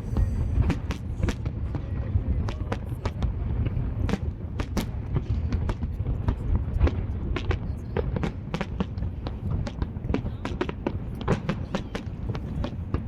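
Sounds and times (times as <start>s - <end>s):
low rumble: 0.0s - 7.8s
fireworks bangs and crackles: 0.0s - 13.0s.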